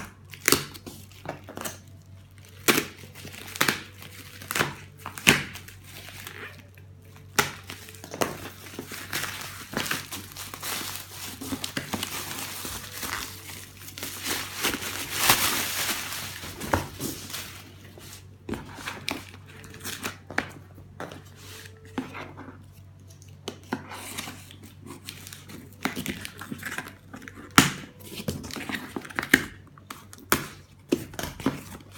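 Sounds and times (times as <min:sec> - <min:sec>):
packaging crinkling: 0:00.3 - 0:20.3.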